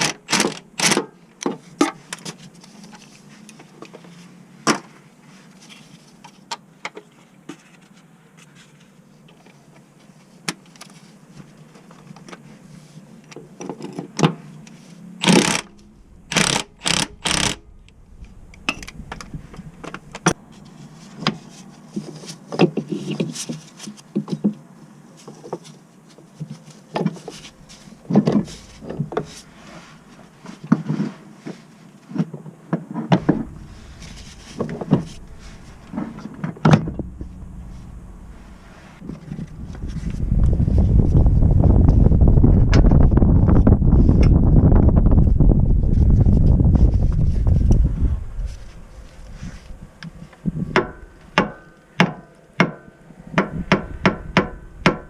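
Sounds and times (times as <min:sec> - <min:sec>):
knocks clicks and scrapes: 0:15.2 - 0:17.6, 0:32.8 - 0:40.6
loud hissing bursts: 0:15.2 - 0:19.8.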